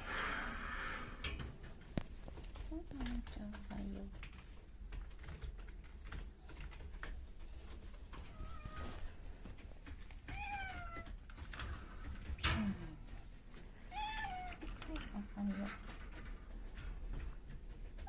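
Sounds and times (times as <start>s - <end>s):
light clicks and taps: 1.2s - 18.0s
cat meowing: 8.3s - 9.0s, 10.3s - 11.2s, 13.9s - 14.7s.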